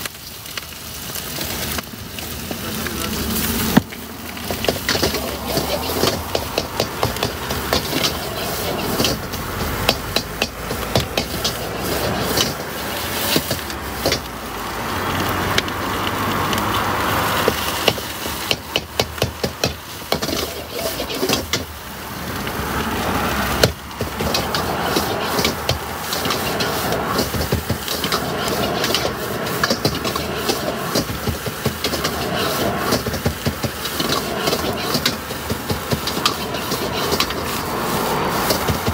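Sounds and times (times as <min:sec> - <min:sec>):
steady background noise: 0:00.0 - 0:38.9
metal spatula scraping a wok: 0:04.3 - 0:14.3, 0:16.6 - 0:21.8, 0:23.5 - 0:38.9.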